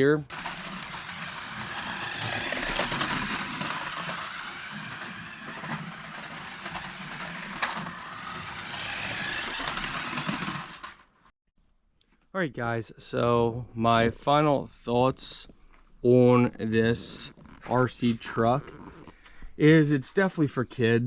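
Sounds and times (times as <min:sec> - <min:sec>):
tyres rolling: 0:00.0 - 0:11.2
toy truck motor whirring: 0:00.3 - 0:11.3.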